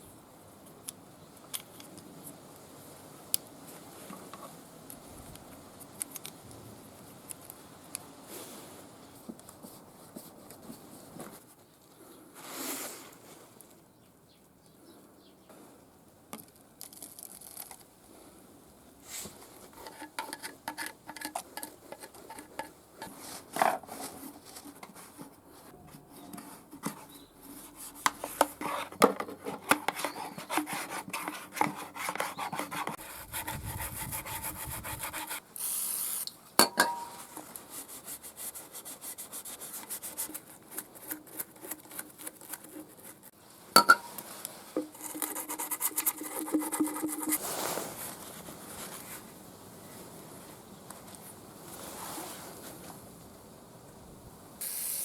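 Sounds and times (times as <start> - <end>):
brief hiss: 12.4 - 13.2, 35.6 - 36.4, 47.4 - 48.2, 54.6 - 55.0
scraping and rubbing engine parts: 19.1 - 36.2, 44.2 - 49.3.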